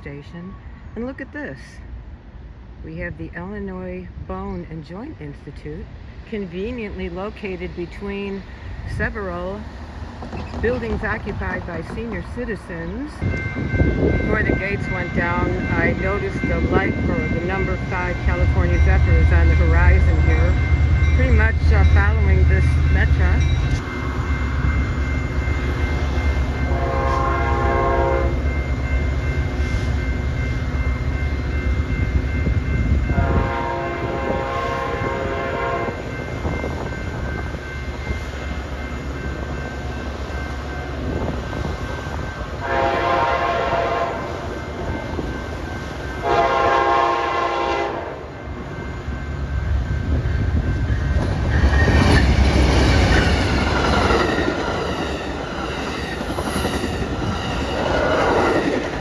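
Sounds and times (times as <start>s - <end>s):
low rumble of moving trains: 0.0s - 59.0s
train wheel and rail noise: 0.0s - 59.0s
train horn blasts: 26.7s - 28.4s, 33.1s - 36.1s, 42.6s - 44.5s, 46.2s - 48.4s.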